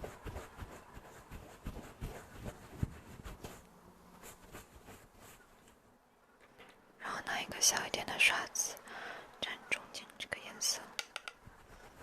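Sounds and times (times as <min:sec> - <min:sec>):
makeup brush sweeping and tapping: 0:00.0 - 0:05.8, 0:10.3 - 0:12.0.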